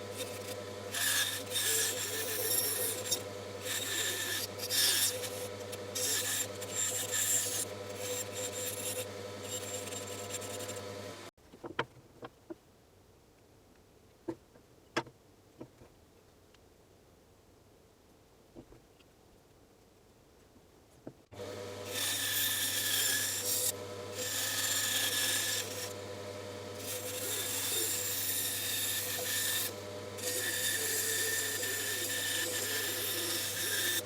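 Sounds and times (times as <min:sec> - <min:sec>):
bandsaw blade cutting wood: 0:00.0 - 0:11.2, 0:21.4 - 0:34.0
bandsaw humming: 0:00.0 - 0:11.3, 0:21.4 - 0:34.0.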